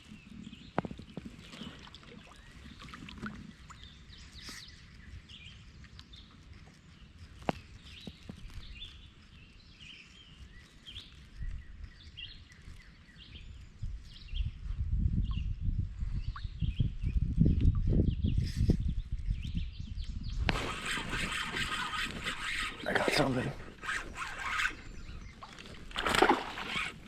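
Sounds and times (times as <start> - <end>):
small birds chirping: 0.0 - 14.6, 15.2 - 27.0.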